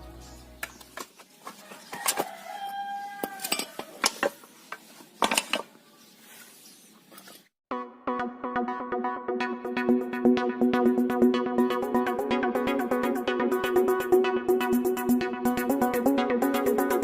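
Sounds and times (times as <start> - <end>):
metal tools clinking: 3.2 - 4.4.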